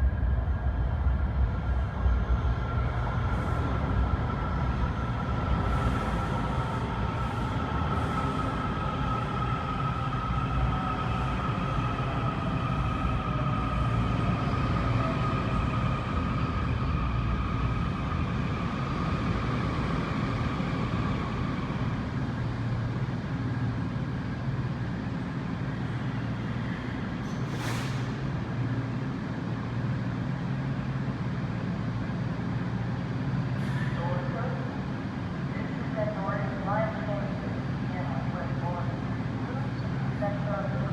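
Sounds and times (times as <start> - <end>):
train rumble from inside car: 0.0 - 8.8.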